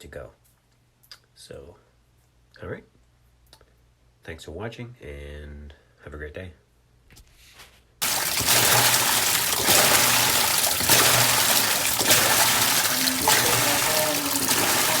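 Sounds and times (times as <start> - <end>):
running splashing water: 8.0 - 15.0.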